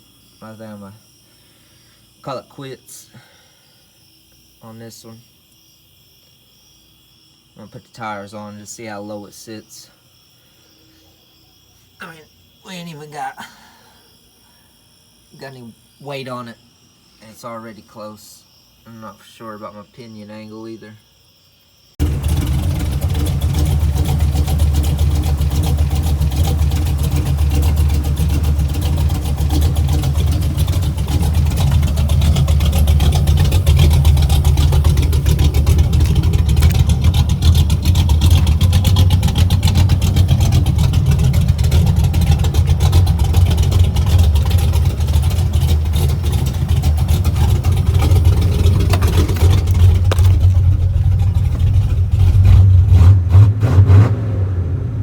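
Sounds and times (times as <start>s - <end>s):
truck engine running deep: 22.0s - 55.0s.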